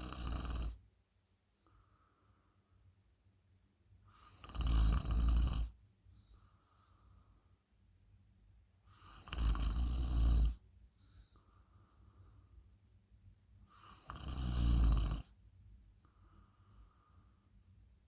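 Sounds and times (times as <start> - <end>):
person snoring loudly: 0.0 - 0.8, 4.4 - 5.7, 14.1 - 15.3
quiet breathing: 0.0 - 3.2, 4.0 - 8.0, 8.8 - 18.0.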